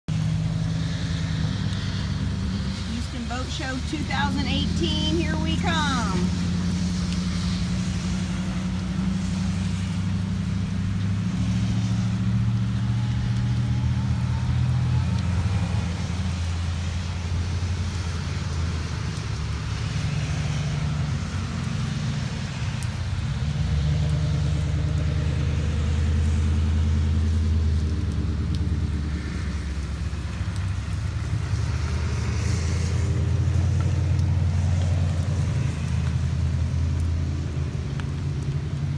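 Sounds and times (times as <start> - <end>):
road noise: 0.0 - 38.9
vehicle engine rumble: 0.0 - 38.9.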